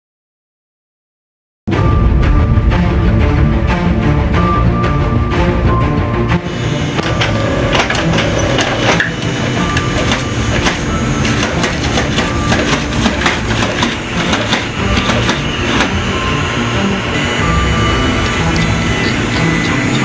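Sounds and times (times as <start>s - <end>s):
printer clattering and clicking: 6.4s - 16.1s.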